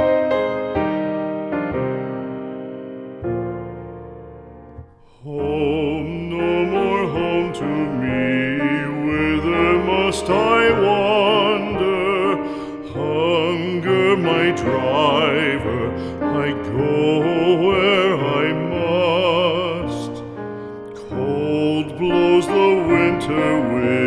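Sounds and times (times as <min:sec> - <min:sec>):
slow piano ballad: 0:00.0 - 0:24.0
person singing with vibrato: 0:05.0 - 0:24.0.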